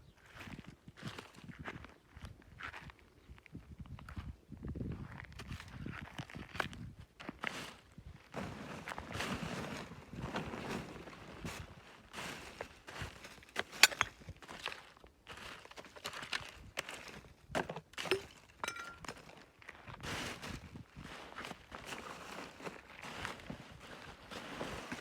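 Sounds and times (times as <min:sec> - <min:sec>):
hard objects clicking and clinking: 0:13.8 - 0:14.1, 0:18.1 - 0:19.1.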